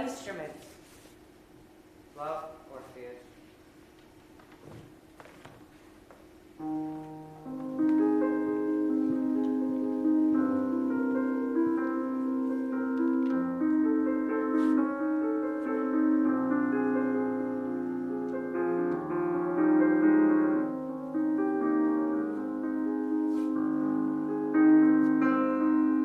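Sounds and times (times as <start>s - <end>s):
slow piano music: 5.9s - 26.0s.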